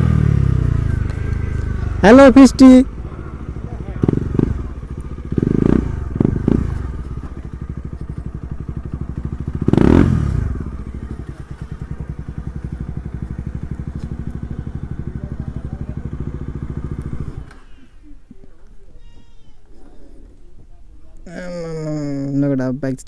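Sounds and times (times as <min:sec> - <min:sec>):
motorcycle engine idling and revving: 0:00.0 - 0:18.1.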